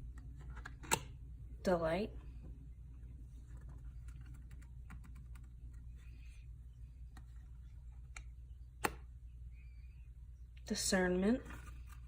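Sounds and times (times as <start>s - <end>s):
low steady hum: 0.0s - 12.0s
cards sliding rustle: 11.4s - 12.0s.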